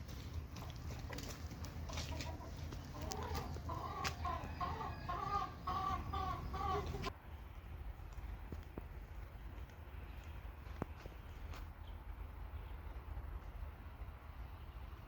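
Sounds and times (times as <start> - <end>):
chickens clucking: 0.1 - 7.1.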